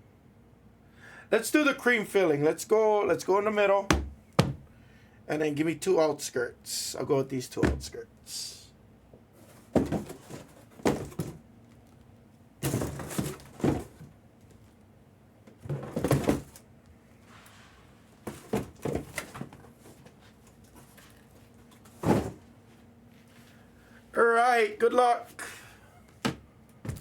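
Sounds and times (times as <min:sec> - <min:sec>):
cardboard boxes knocking and thudding: 0:03.9 - 0:04.7, 0:07.6 - 0:07.9, 0:09.4 - 0:11.4, 0:12.6 - 0:14.2, 0:15.5 - 0:16.6, 0:18.2 - 0:20.2, 0:21.9 - 0:22.5, 0:26.2 - 0:27.0
boxes scraping on table: 0:09.4 - 0:11.4, 0:12.6 - 0:14.0.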